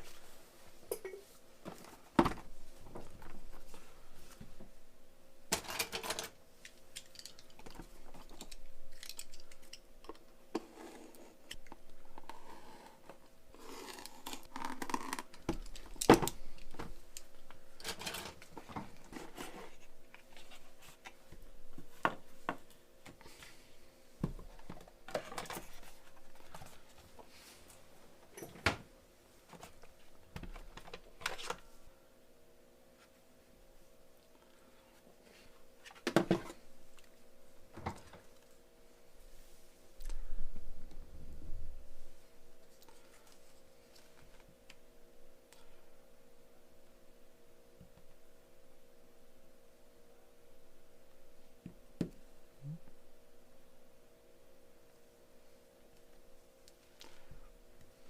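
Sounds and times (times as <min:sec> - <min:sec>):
faint electrical hum: 0:00.0 - 0:58.0
tools and parts clicking and tapping: 0:05.5 - 0:10.7.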